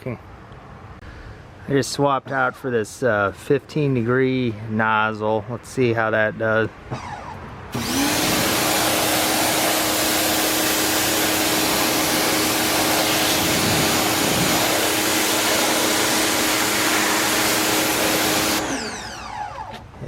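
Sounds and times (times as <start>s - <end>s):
pressure washer motor hum: 6.9s - 20.0s
water jet hissing: 8.0s - 18.9s.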